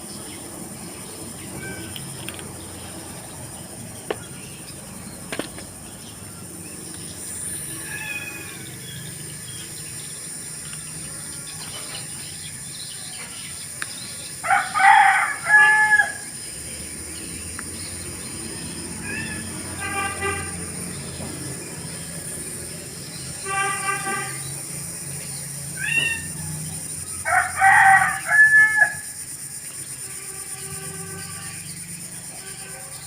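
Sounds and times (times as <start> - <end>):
rooster crowing: 7.7 - 9.0, 14.4 - 16.5, 27.0 - 29.2.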